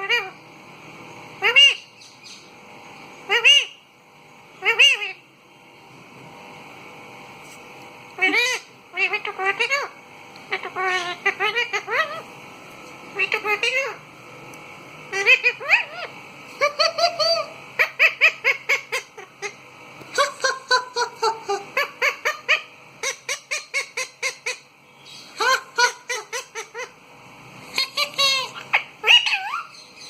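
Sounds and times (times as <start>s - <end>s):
parrot calling: 0.0s - 0.4s, 1.4s - 2.5s, 3.2s - 3.8s, 4.6s - 5.2s, 8.2s - 12.3s, 13.1s - 14.1s, 15.1s - 27.0s, 27.6s - 30.0s.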